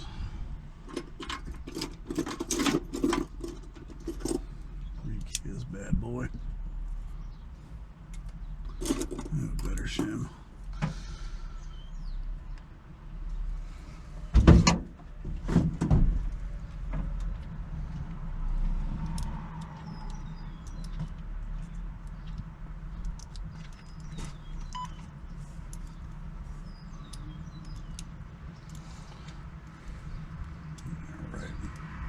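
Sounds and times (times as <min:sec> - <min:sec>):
birds chirping: 0:00.0 - 0:13.0, 0:19.6 - 0:32.0
low wind rumble: 0:00.0 - 0:32.0
light clicks: 0:19.0 - 0:25.0.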